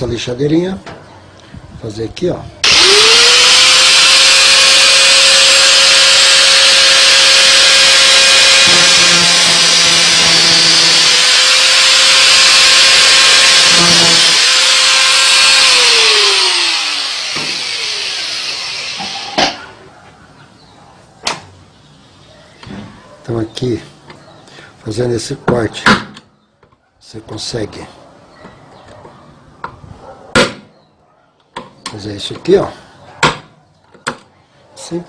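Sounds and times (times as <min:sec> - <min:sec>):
electric grinder grinding metal: 0:02.6 - 0:19.6
grinder spinning down: 0:02.6 - 0:19.6.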